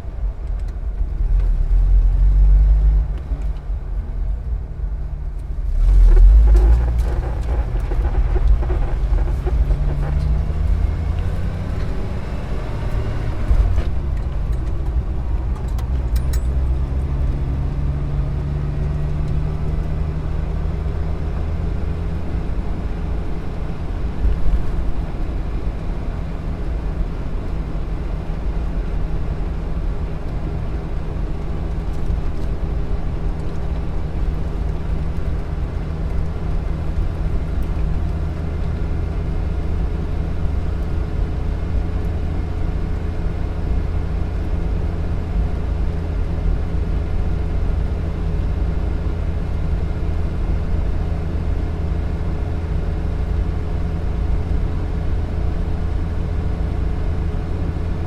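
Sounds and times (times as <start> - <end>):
car engine and road noise: 0.0 - 58.0.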